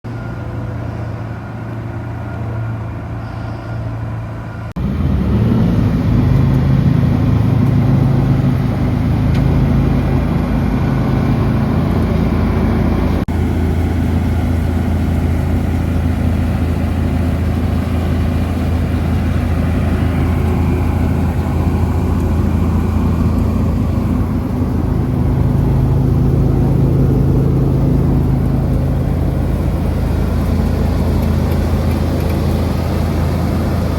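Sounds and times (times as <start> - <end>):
heavy machinery engine running: 0.1 - 33.9.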